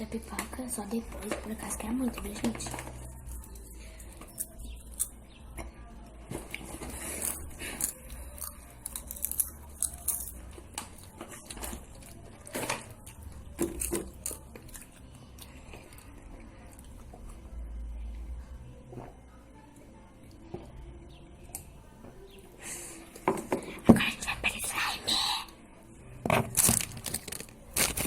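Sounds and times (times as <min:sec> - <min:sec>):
crackles and squishy clicks: 0:26.4 - 0:28.0.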